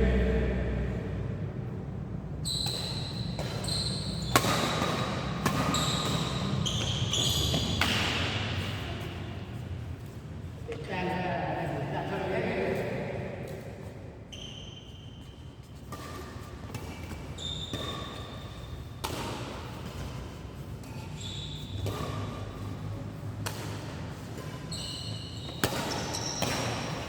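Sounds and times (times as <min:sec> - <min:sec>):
shoes squeaking on court floor: 0:02.4 - 0:10.9, 0:13.6 - 0:27.0
racket hitting shuttlecock: 0:02.7 - 0:09.1, 0:15.9 - 0:27.0.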